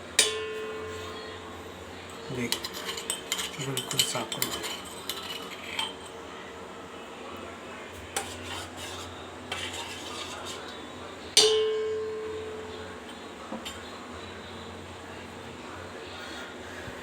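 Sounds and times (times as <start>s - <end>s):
loud ringing metallic clang: 0.2s - 1.5s, 11.4s - 12.5s
metal utensils clinking: 2.3s - 6.2s.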